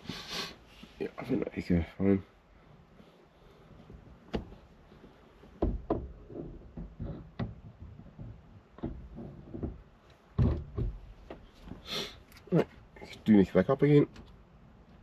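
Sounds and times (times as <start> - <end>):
knocks and clicks of parts handled: 3.8 - 12.9.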